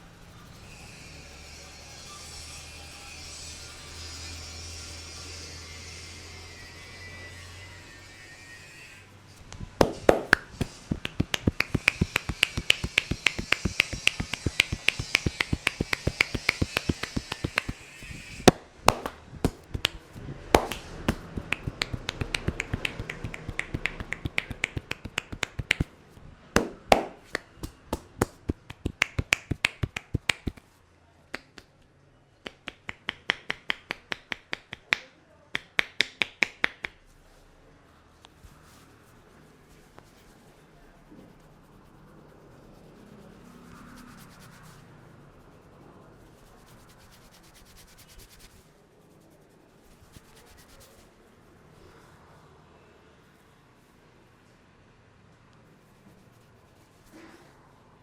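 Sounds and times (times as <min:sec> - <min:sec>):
hands snapping in head massage: 0:09.5 - 0:25.9, 0:26.6 - 0:30.7, 0:31.4 - 0:31.8, 0:32.4 - 0:37.0, 0:43.9 - 0:44.8, 0:46.4 - 0:48.6, 0:50.0 - 0:51.0.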